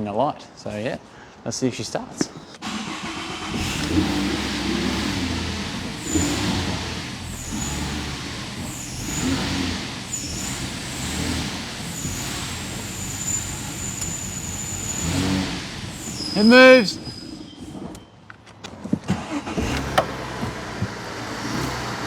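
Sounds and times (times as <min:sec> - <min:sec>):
car engine running: 0:02.9 - 0:16.9, 0:19.2 - 0:22.0.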